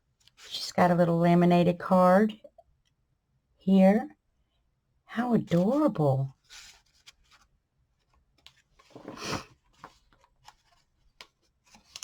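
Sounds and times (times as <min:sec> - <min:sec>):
paper sliding rustle: 0:06.4 - 0:07.5, 0:08.4 - 0:12.0.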